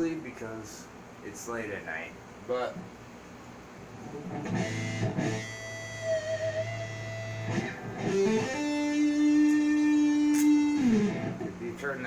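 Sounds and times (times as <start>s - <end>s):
electric guitar chord ringing: 4.2s - 11.5s
electric guitar note sliding up: 4.3s - 11.5s.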